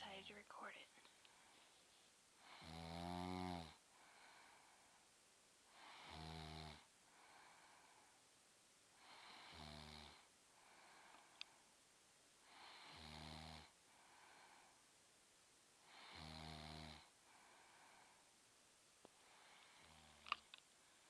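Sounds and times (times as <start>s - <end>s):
soft breathing: 0.2s - 2.7s, 3.8s - 6.2s, 7.0s - 11.8s, 13.8s - 14.9s, 17.0s - 18.4s, 19.1s - 21.0s
person snoring: 2.4s - 4.8s, 5.8s - 8.2s, 9.0s - 11.1s, 12.5s - 14.7s, 15.9s - 18.2s, 19.3s - 20.4s.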